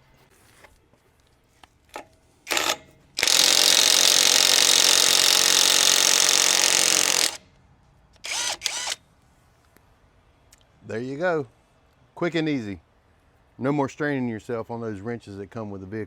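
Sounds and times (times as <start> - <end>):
impact wrench running: 2.5 - 7.4, 8.2 - 9.0.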